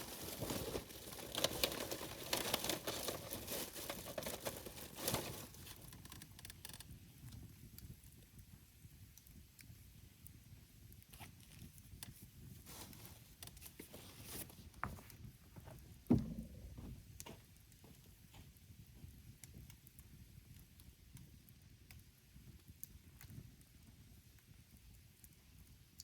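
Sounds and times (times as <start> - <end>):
campfire crackling and popping: 0.0 - 13.8, 16.5 - 26.0
dull thump: 16.1 - 17.0.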